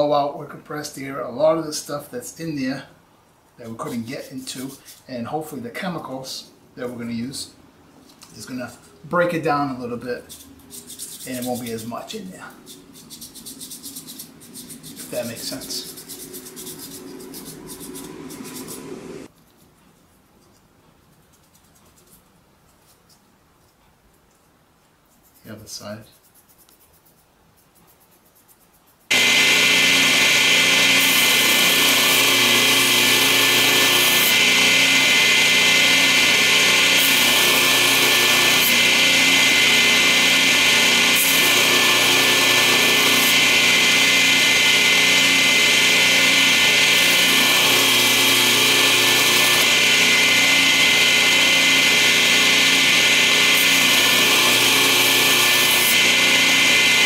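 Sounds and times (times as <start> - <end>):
power tool motor whining: 16.2 - 19.3, 29.1 - 57.0.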